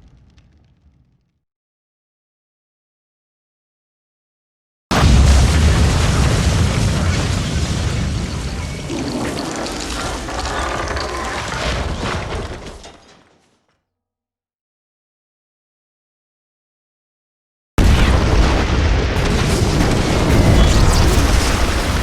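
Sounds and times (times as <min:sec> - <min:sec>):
bomb explosion blast: 0:00.0 - 0:01.3, 0:04.9 - 0:12.6, 0:17.8 - 0:22.0
rumble with crackles: 0:00.0 - 0:01.4, 0:05.0 - 0:12.8.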